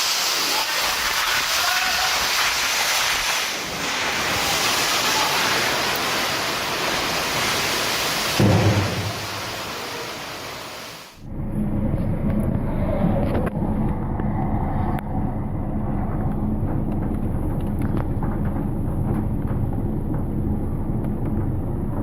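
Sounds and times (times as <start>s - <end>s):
heavy rain: 0.0s - 11.2s
wind: 0.0s - 22.0s
low rumbling noise: 3.3s - 22.0s
thunder rumble: 3.6s - 12.4s.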